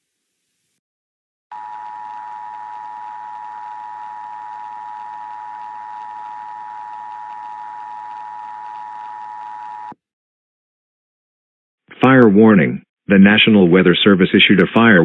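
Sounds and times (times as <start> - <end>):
two-tone alarm: 1.5 - 10.0.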